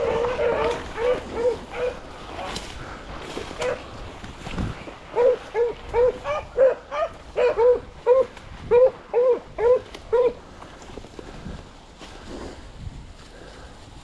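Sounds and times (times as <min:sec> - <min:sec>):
dog barking: 0:00.0 - 0:02.0, 0:03.6 - 0:03.8, 0:05.1 - 0:10.4.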